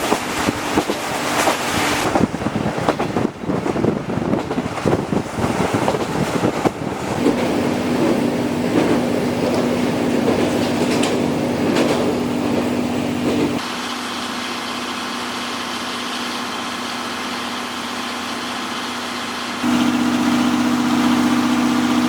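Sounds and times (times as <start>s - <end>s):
clacks over rail joints: 0.0s - 13.6s
train wheels rumbling on rails: 0.0s - 13.8s
steady hum: 19.6s - 22.0s.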